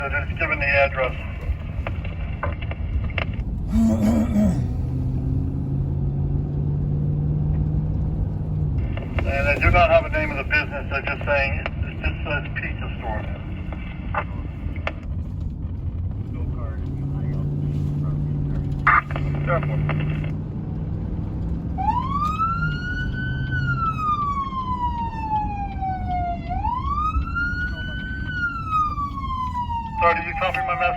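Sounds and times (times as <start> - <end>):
vehicle engine rumble: 0.0 - 30.9
siren wailing: 21.8 - 30.9.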